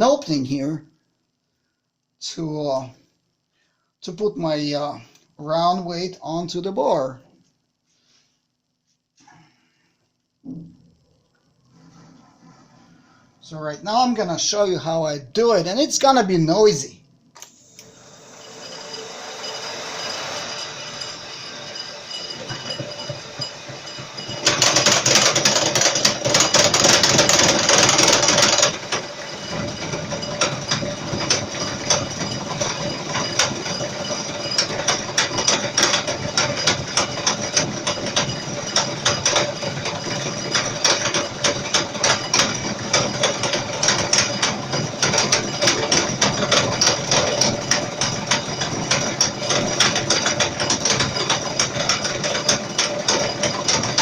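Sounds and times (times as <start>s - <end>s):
steady machine tone: 10.4s - 54.0s
end mill cutter rattle: 17.8s - 54.0s.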